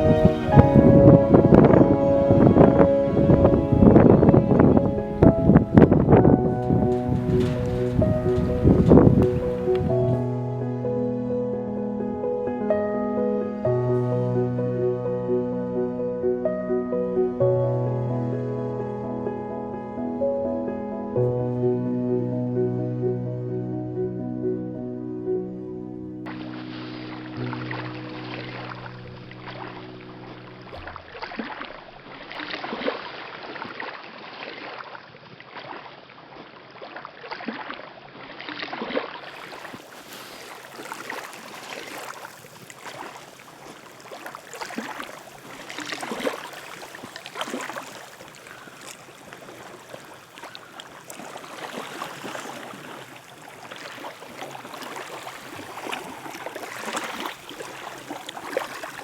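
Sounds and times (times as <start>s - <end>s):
small waves lapping on shore: 0.0s - 10.2s, 26.3s - 59.0s
steady wash of water: 0.0s - 10.3s, 26.3s - 59.0s.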